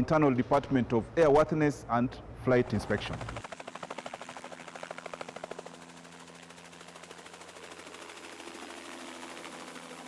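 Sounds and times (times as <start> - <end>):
helicopter rotor chop: 2.6 - 10.0.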